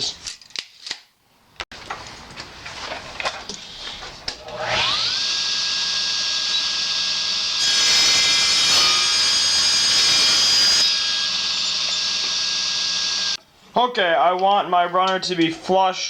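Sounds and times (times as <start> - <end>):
electric saw cutting wood: 4.4 - 13.4.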